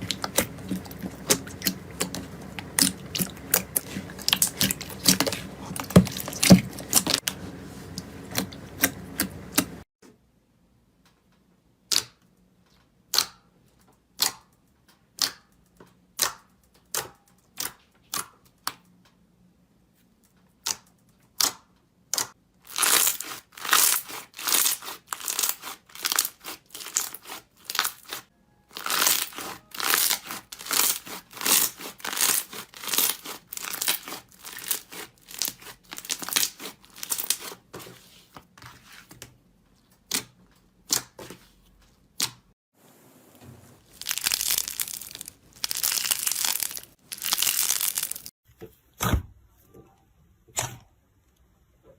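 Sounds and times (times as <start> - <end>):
slime popping and squishing: 28.8 - 37.5, 43.8 - 48.3.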